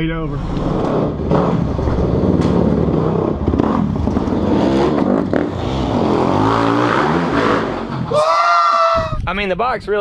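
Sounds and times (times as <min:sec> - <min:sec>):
vehicle engine revving: 0:00.2 - 0:08.1.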